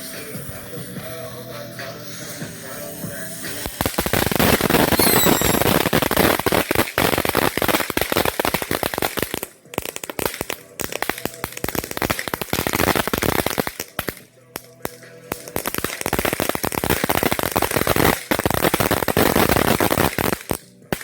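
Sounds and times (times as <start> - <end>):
firework crackling: 0.0 - 21.0
whistling chirps: 4.9 - 5.9.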